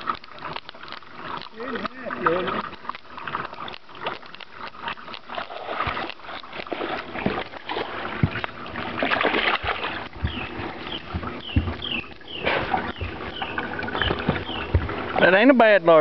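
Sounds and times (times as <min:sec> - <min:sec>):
water splashing: 0:00.0 - 0:16.0
knocks and clicks: 0:10.1 - 0:15.1.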